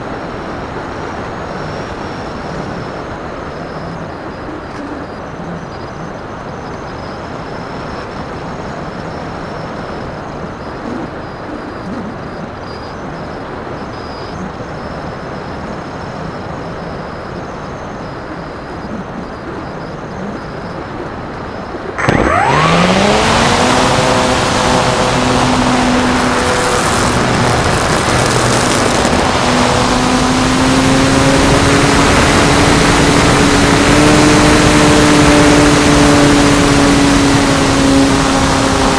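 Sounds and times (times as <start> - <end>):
steady airflow noise: 14.4 - 38.9
electric motor whine: 22.0 - 38.9.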